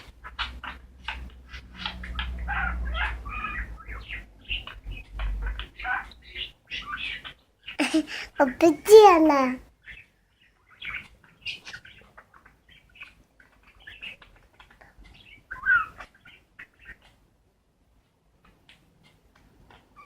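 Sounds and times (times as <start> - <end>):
budgerigars chirping and clicking: 0.0 - 7.8, 9.7 - 17.4.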